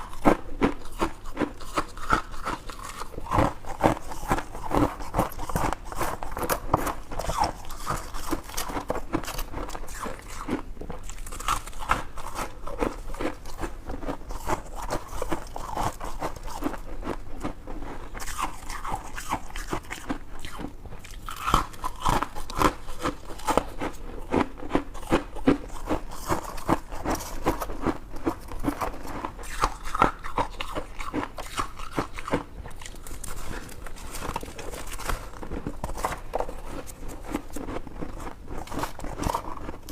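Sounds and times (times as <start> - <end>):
chewing ice crunching: 0.0 - 39.9.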